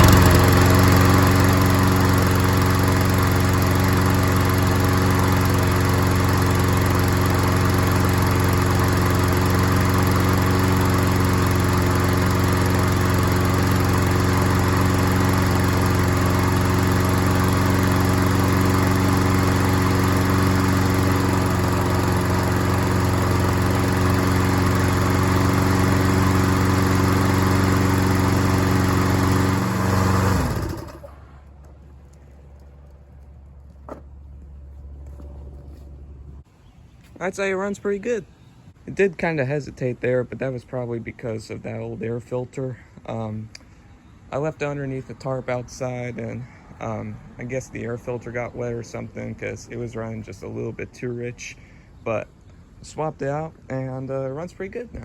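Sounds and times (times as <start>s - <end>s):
lawn mower engine running: 0.0s - 36.5s.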